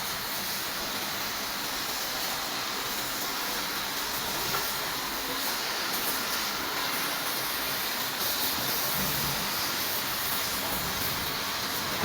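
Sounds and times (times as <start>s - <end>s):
furnace hissing: 0.0s - 12.0s.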